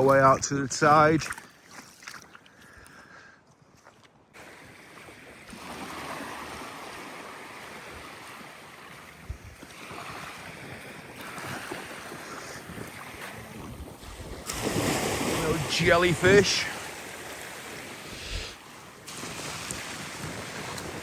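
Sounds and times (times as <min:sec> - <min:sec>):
sea waves washing onto beach: 0:04.4 - 0:21.0
wind on microphone: 0:07.8 - 0:21.0.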